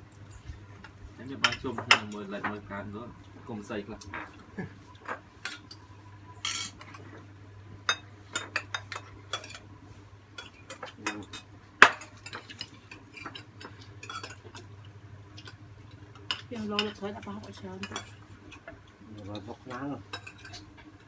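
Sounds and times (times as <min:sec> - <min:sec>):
metal utensils clinking on bowls: 0:01.4 - 0:02.6, 0:05.0 - 0:05.8, 0:06.4 - 0:07.1, 0:07.9 - 0:09.6, 0:10.4 - 0:14.7, 0:15.4 - 0:15.6, 0:16.2 - 0:21.0.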